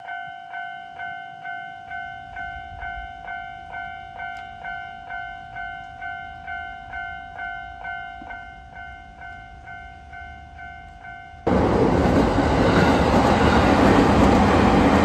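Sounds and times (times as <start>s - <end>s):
level crossing alarm bell: 0.0s - 11.6s.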